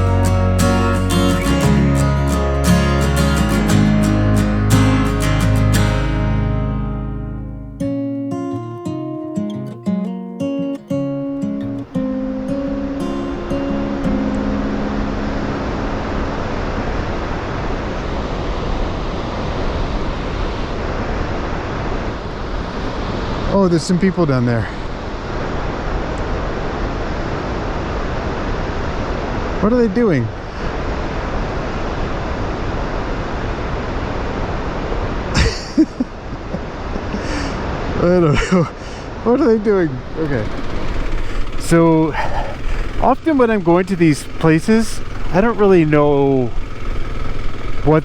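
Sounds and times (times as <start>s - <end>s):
waterfall roaring: 10.8s - 29.6s, 36.1s - 48.0s
breathy sound: 37.1s - 37.7s, 39.9s - 43.4s.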